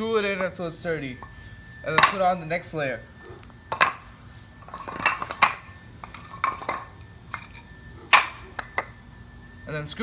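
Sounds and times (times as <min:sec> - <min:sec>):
wooden boards clinking and knocking: 0:02.0 - 0:02.2, 0:03.7 - 0:04.1, 0:04.7 - 0:08.9.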